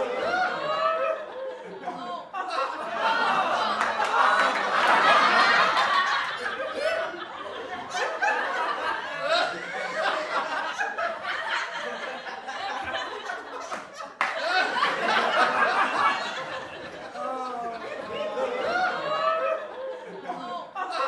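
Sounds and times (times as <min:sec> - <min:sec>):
group of people laughing: 0:00.0 - 0:21.0.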